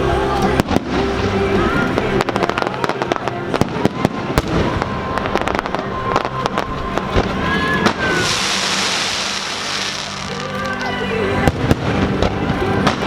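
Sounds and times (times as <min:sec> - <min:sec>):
fireworks bangs and crackles: 0:00.0 - 0:13.0
long steady firework whistle: 0:00.6 - 0:13.0
higher firework whistle: 0:03.8 - 0:11.0.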